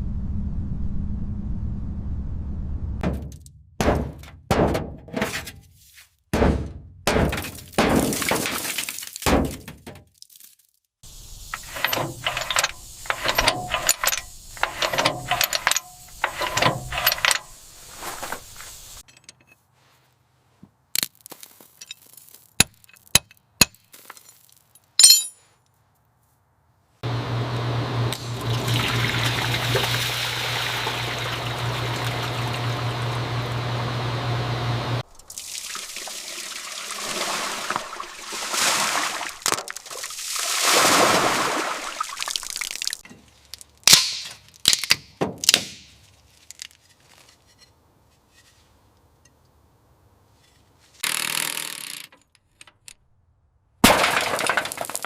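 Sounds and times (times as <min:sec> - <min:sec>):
ringing clink: 0:25.0 - 0:25.4
scraping strokes: 0:46.0 - 0:48.9.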